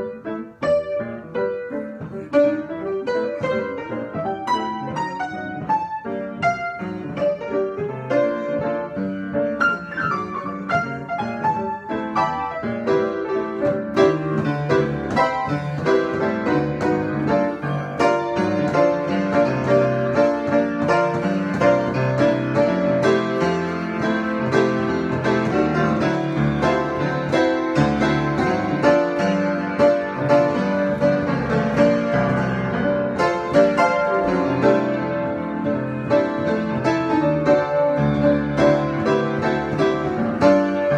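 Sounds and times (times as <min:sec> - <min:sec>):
solo piano: 0:00.0 - 0:40.9.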